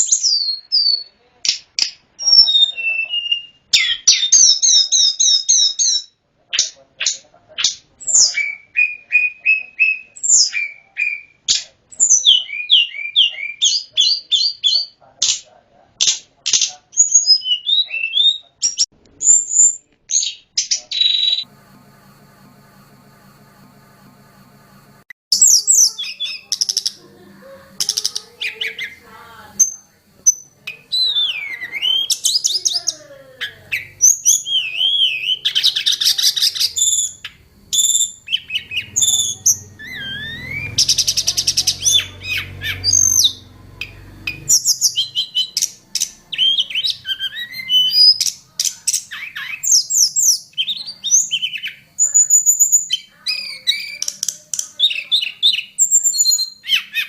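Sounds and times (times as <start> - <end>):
bird chirping and trilling: 0.0 - 1.1, 1.8 - 6.7, 8.0 - 15.0, 17.0 - 21.5, 25.3 - 57.0.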